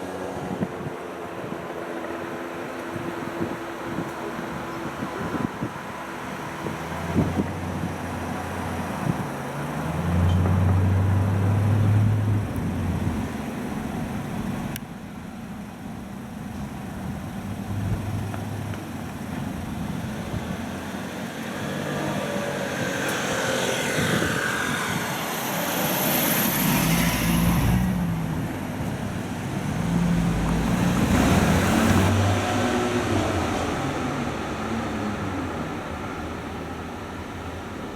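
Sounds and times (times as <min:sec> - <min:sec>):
vehicle engines humming: 0:00.0 - 0:37.9
vehicle passing with whine: 0:20.0 - 0:37.9.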